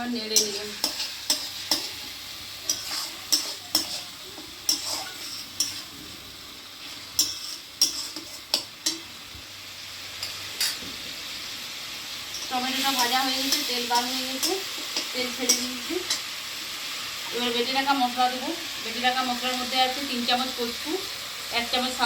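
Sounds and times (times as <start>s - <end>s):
oil sizzling: 0.0s - 22.0s
spatula scraping a pan: 0.3s - 6.0s, 6.8s - 9.0s.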